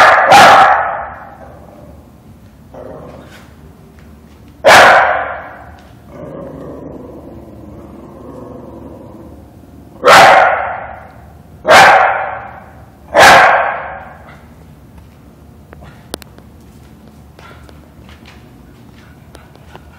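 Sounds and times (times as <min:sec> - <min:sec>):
dog barking: 0:00.0 - 0:01.3, 0:04.6 - 0:05.7, 0:10.0 - 0:11.0, 0:11.7 - 0:14.5.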